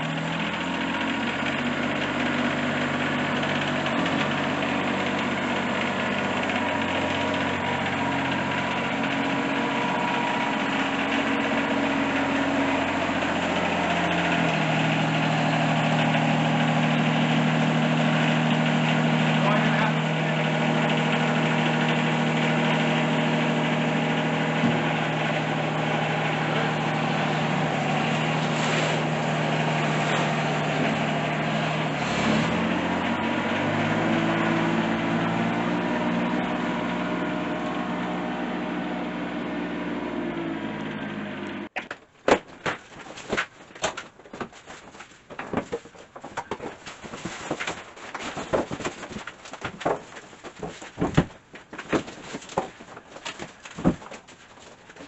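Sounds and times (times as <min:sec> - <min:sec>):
engine running steadily: 0:00.0 - 0:41.8.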